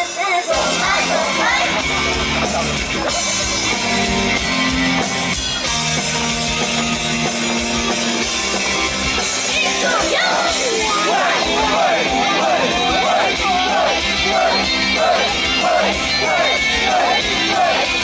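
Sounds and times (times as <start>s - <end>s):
pop singing: 0.0s - 3.6s, 9.2s - 18.0s
rock backing track over pa: 0.0s - 18.0s.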